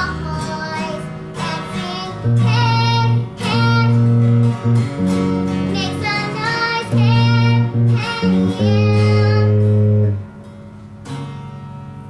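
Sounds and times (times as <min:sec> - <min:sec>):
girl singing: 0:00.0 - 0:04.6, 0:05.5 - 0:10.1
acoustic guitar: 0:00.0 - 0:12.0
bass guitar: 0:00.0 - 0:12.0
guitar chord ringing out: 0:00.0 - 0:12.0.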